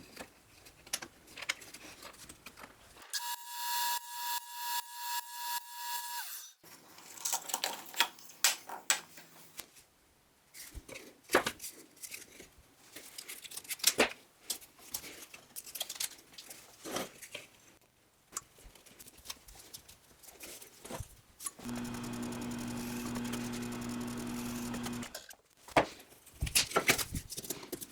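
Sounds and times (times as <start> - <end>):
power tool running with pulsing tone: 3.2 - 6.4, 21.6 - 25.1.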